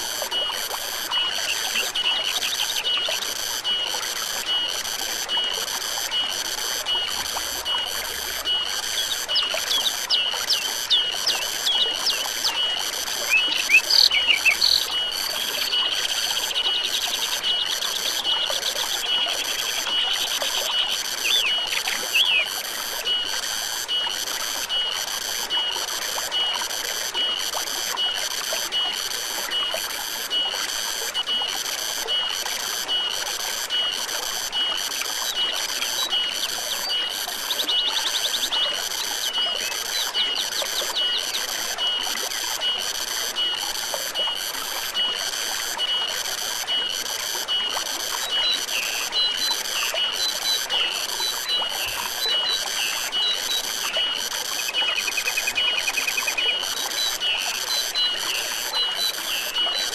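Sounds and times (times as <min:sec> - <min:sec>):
forest stream running: 0:00.0 - 0:59.9
birds chirping and trilling: 0:13.3 - 0:14.9.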